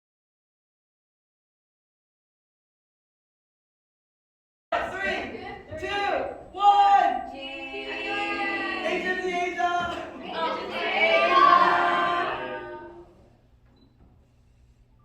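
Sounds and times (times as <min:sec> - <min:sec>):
voices singing long held notes: 0:10.2 - 0:13.2.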